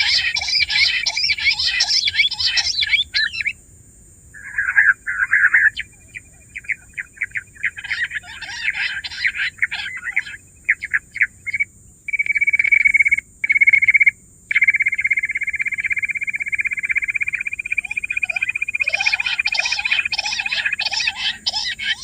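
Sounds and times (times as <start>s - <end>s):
quail chirping and chattering: 0.0s - 3.6s, 4.4s - 12.9s, 14.5s - 22.0s
quail rapid trills: 0.0s - 3.6s, 4.4s - 11.7s, 15.6s - 22.0s.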